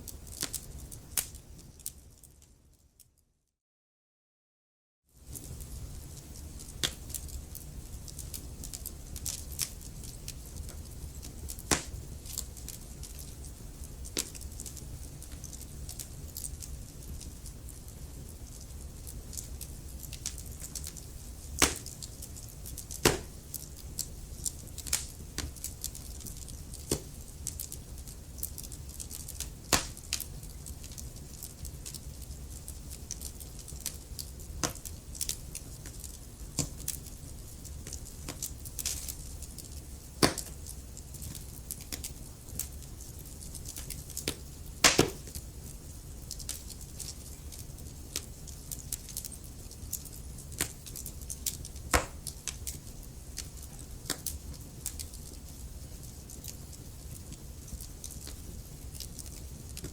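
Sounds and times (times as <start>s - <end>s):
loud fire snaps: 0.0s - 2.5s, 5.2s - 59.9s
low rumble of flames: 0.0s - 2.6s, 5.2s - 59.9s
fire crackling and popping: 0.0s - 3.1s, 5.2s - 59.9s.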